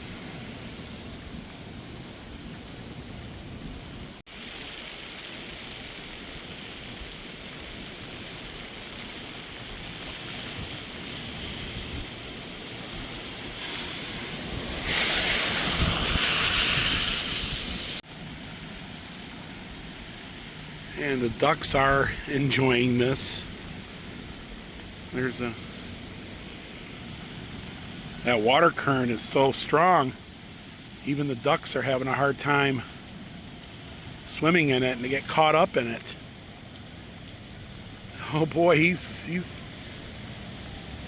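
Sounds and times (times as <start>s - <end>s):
rushing floodwater: 0.0s - 41.0s.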